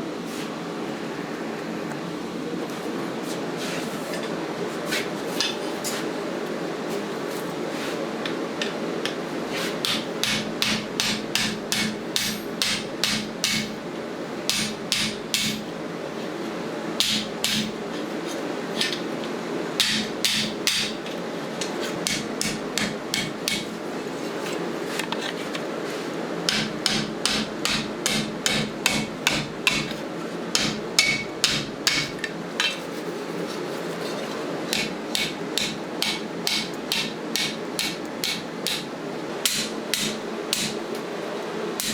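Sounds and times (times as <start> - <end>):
hammer striking steel on anvil: 9.8 - 13.8, 14.5 - 15.7, 17.0 - 17.8, 19.8 - 21.0, 22.1 - 23.7, 26.5 - 30.0, 30.6 - 32.2, 34.7 - 38.9, 39.5 - 40.8.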